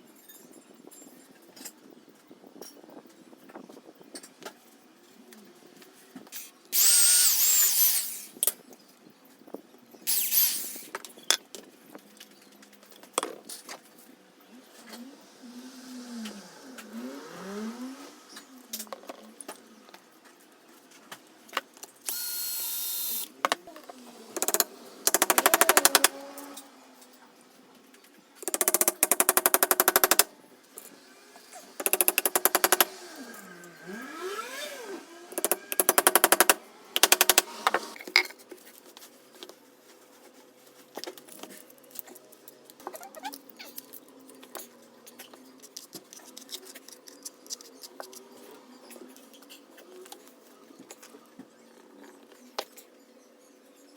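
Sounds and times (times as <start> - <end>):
hammering power tool: 24.3 - 26.6, 31.4 - 38.0.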